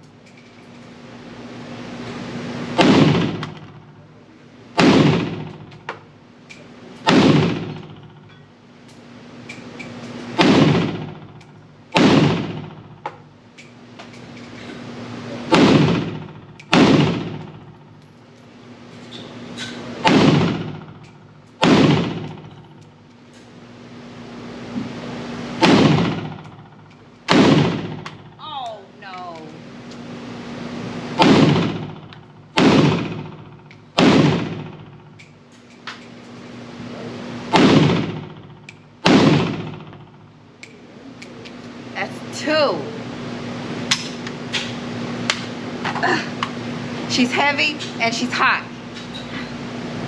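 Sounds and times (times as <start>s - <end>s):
pistol gunshots with echo: 2.8s - 3.7s, 4.8s - 5.7s, 7.0s - 8.2s, 10.4s - 12.9s, 15.5s - 17.6s, 20.0s - 21.0s, 21.6s - 22.6s, 25.6s - 26.6s, 27.3s - 28.4s, 31.2s - 35.0s, 37.5s - 40.2s.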